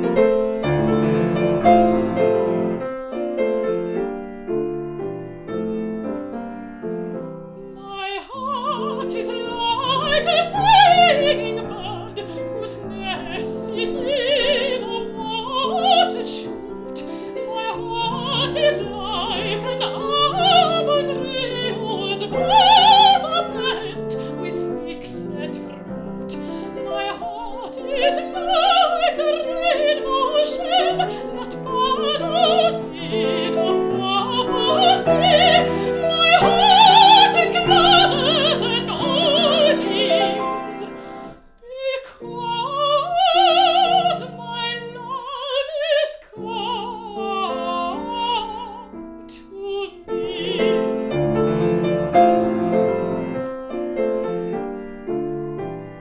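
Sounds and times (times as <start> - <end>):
piano accompaniment: 0.0 - 56.0
woman singing with vibrato: 7.8 - 51.6.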